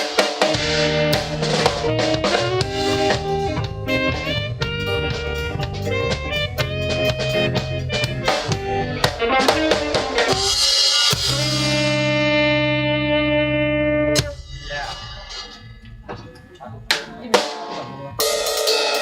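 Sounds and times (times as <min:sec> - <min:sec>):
electric guitar: 0:00.0 - 0:14.4
drum kit beat: 0:00.0 - 0:19.0.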